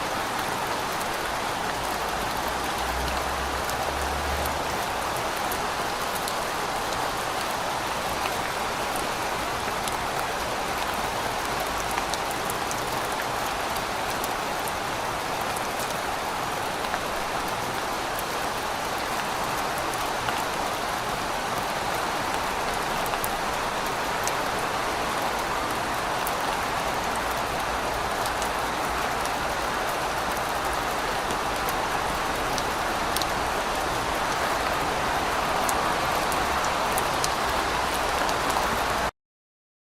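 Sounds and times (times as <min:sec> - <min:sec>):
steady rain falling: 0:00.0 - 0:39.1.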